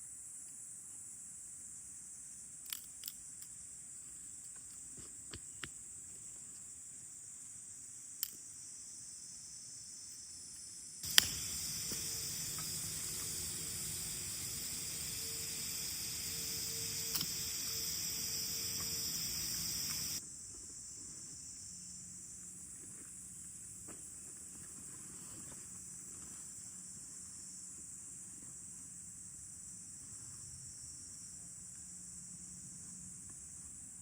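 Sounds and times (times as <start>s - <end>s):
faint steady hum: 0.0s - 20.3s
insects trilling: 5.5s - 20.2s
sharp click: 11.0s - 20.2s.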